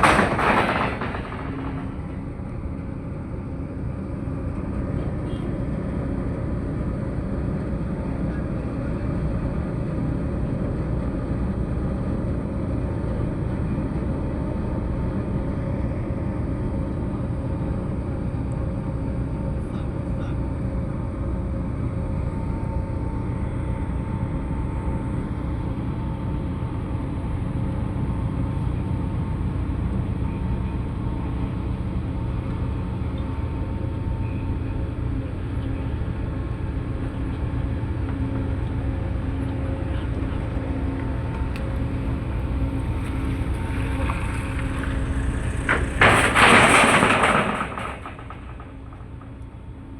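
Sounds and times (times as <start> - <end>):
ship engine rumbling: 0.0 - 7.4, 29.4 - 49.9.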